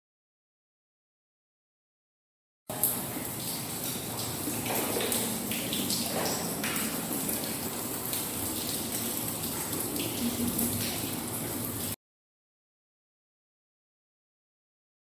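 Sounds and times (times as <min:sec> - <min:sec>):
heavy rain rushing: 0:02.8 - 0:12.0.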